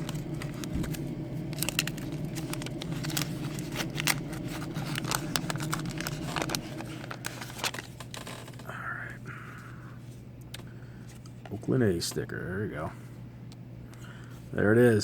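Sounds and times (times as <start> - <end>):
paper wrapper crinkling and tearing: 0.0 - 8.7
steady low hum: 0.0 - 15.0.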